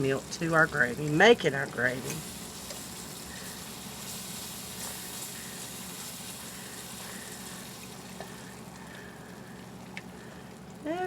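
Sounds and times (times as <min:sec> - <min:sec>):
gravy sizzling in a hot pan: 0:00.0 - 0:11.0.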